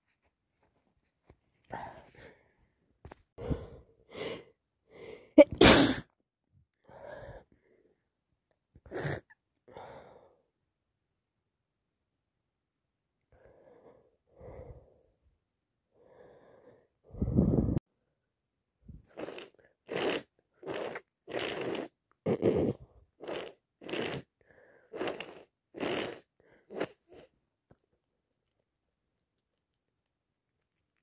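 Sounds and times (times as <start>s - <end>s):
person breathing in with a cold: 1.6s - 2.8s, 3.4s - 5.4s, 6.8s - 8.0s, 8.9s - 10.5s, 13.3s - 15.2s, 15.9s - 17.8s, 24.4s - 25.3s
loud sneeze: 5.4s - 6.1s.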